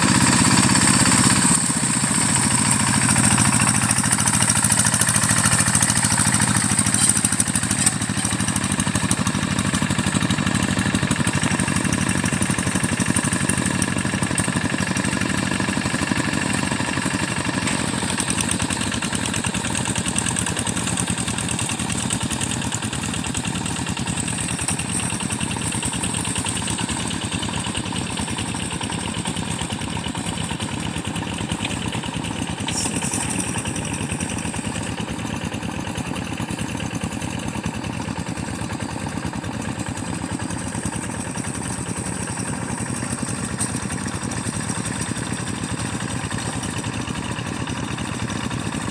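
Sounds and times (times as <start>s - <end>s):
tractor diesel engine chugging: 0.0s - 48.9s.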